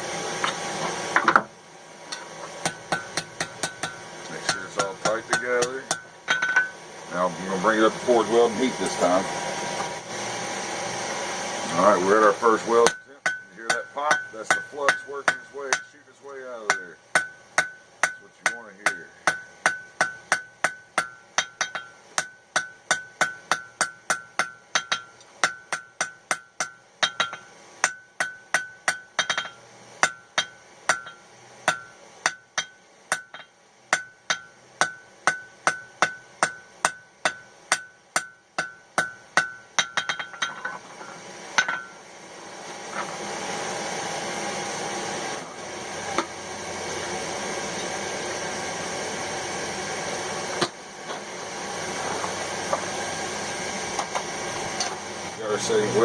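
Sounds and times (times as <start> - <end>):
hammer blows ringing on anvil: 2.7 - 6.7, 12.8 - 16.0, 16.6 - 40.6.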